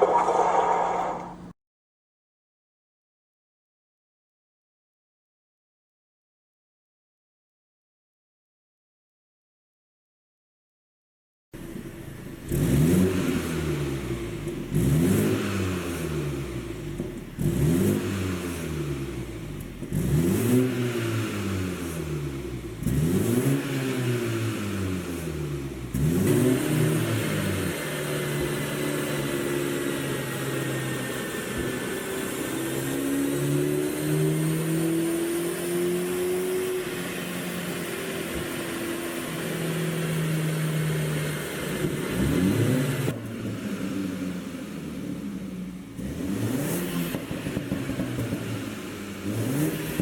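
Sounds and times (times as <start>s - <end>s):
car engine revving: 0.0s - 1.5s, 12.1s - 50.0s.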